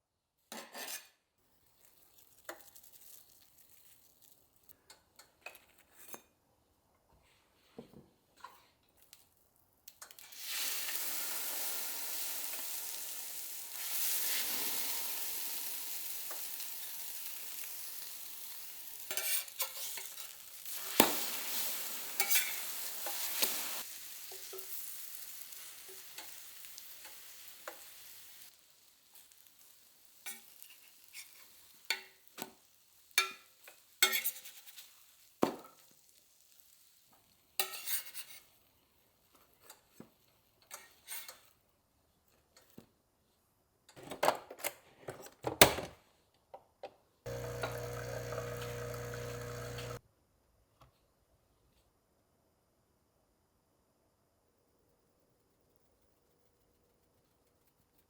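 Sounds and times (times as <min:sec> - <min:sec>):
food sizzling in frying pan: 0:01.6 - 0:04.5, 0:10.1 - 0:38.3, 0:47.3 - 0:50.0.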